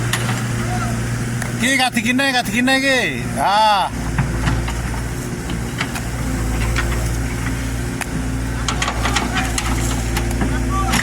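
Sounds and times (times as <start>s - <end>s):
excavator diesel engine running: 0.0s - 11.0s
machine knocks and clatter: 4.1s - 10.6s.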